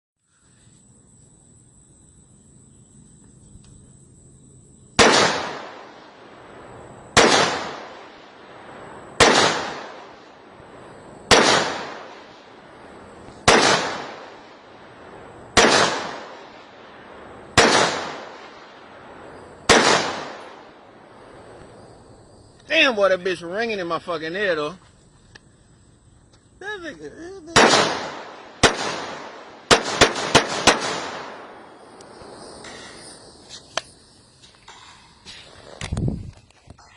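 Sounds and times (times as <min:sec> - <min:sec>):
rifle shots echoing: 0:05.0 - 0:21.6, 0:27.5 - 0:32.2.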